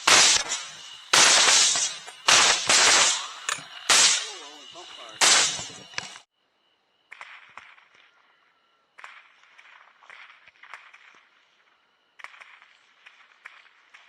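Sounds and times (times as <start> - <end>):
rifle shots: 0.0 - 6.2.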